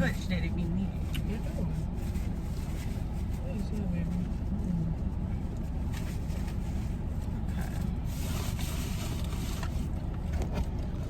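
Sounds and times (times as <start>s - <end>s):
low rumble inside car cabin: 0.0s - 11.0s.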